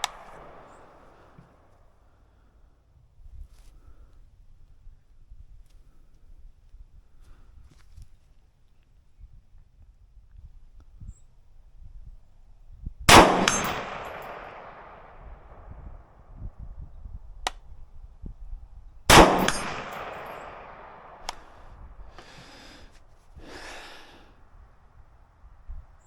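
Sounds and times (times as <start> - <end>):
gunshots with echoing tail: 0.0 - 1.4, 13.1 - 16.1, 19.1 - 22.6.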